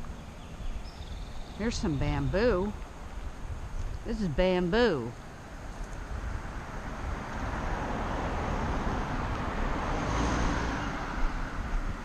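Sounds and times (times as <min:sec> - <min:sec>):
car driving past: 0:06.4 - 0:12.0.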